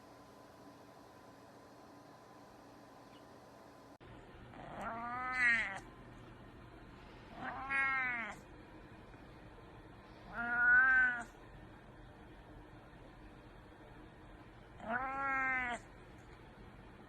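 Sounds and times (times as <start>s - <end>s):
cat meowing: 4.6s - 5.9s, 7.3s - 8.4s, 10.3s - 11.4s, 14.8s - 15.9s.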